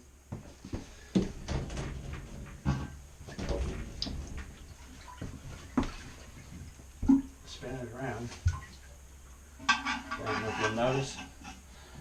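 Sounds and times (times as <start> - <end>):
porcelain toilet scraping: 0.7 - 6.5, 9.6 - 12.0.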